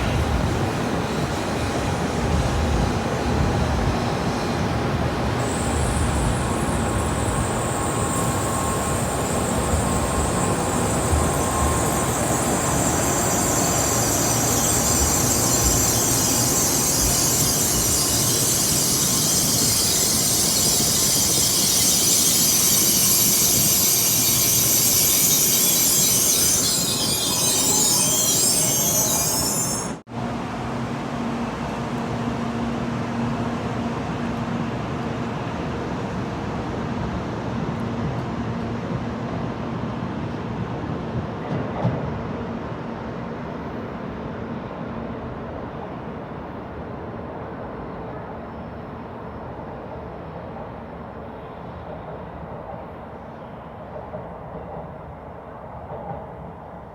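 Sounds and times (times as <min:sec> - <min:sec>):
train wheel and air rush: 0:00.0 - 0:44.6.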